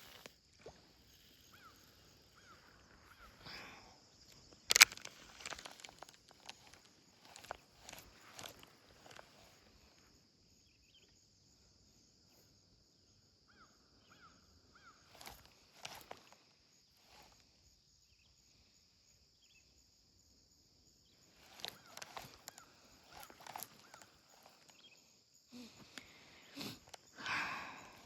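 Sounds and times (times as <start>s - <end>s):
steady high-pitched hiss: 0.0s - 28.0s
faint clicks: 4.2s - 9.6s, 21.4s - 25.0s, 25.8s - 26.2s.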